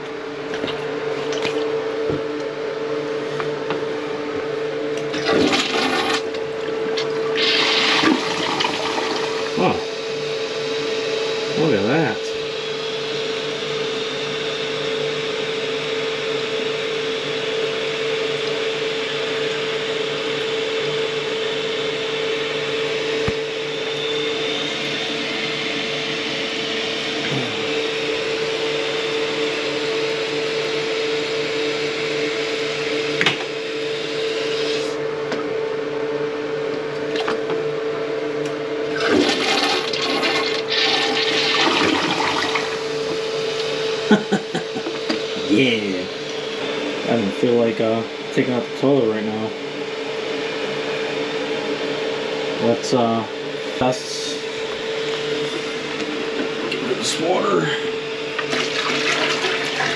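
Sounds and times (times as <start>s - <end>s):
motor hum: 0.0s - 59.9s
water gurgling: 5.1s - 9.7s, 38.9s - 42.8s
water rushing in toilet plumbing: 5.1s - 9.8s, 38.9s - 43.0s, 58.4s - 59.9s.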